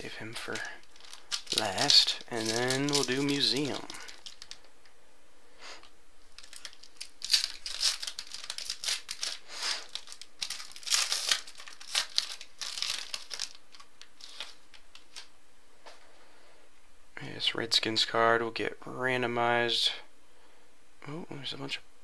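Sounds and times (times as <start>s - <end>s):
wrapper tearing and crinkling: 0.0s - 4.7s, 6.3s - 15.3s.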